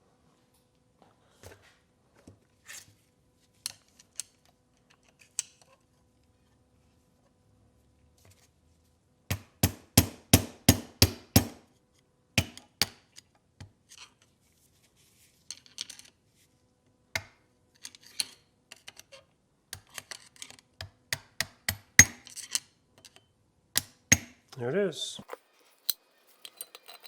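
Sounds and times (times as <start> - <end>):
hammer tapping on metal: 9.3 - 11.6.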